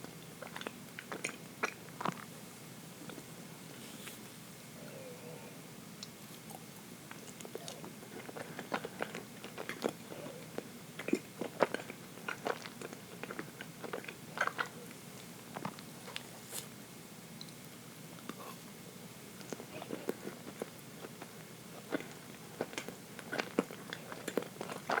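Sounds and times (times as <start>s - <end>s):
chewing with wet mouth clicks: 0.0s - 2.3s, 6.0s - 16.3s, 19.4s - 25.0s.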